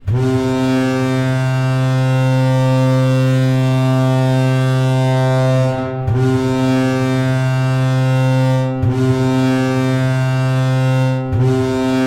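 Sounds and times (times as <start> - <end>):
arena goal horn blast: 0.0 - 12.0.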